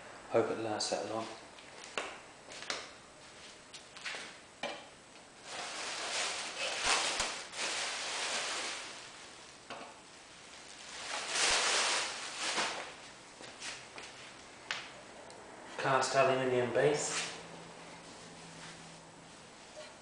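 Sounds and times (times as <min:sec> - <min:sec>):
rustling and scraping handling noises: 0:05.4 - 0:09.1, 0:10.5 - 0:14.4.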